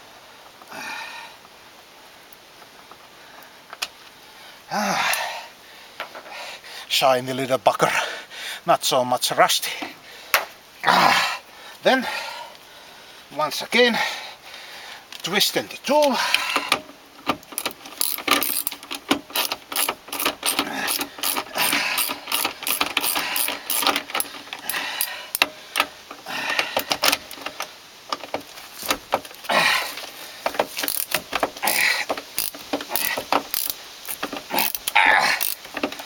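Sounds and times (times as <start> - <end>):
hand tool metallic clicks: 16.0 - 29.1, 30.5 - 36.0.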